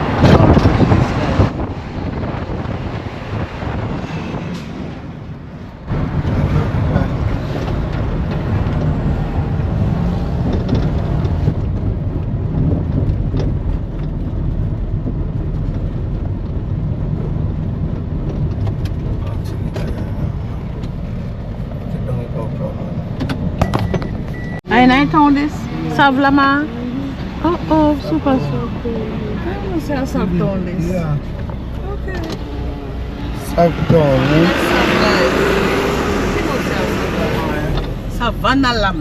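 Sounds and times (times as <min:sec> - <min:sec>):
wind buffeting microphone: 0:00.0 - 0:21.8
vehicle engine and road rumble: 0:00.0 - 0:39.0.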